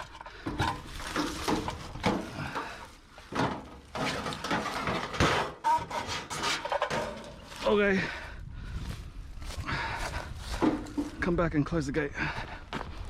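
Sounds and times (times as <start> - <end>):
scrap metal clattering: 0.0 - 7.8.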